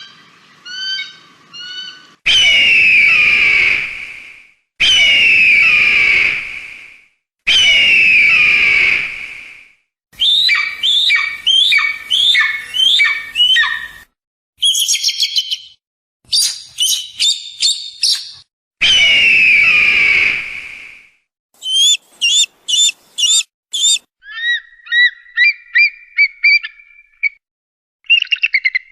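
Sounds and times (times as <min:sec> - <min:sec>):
bird of prey screaming: 0:00.0 - 0:03.9, 0:04.8 - 0:06.4, 0:07.5 - 0:09.1, 0:10.2 - 0:14.0, 0:18.8 - 0:20.4, 0:21.6 - 0:26.8
falling whistled notes: 0:21.6 - 0:24.0
fast high chattering: 0:21.6 - 0:24.0.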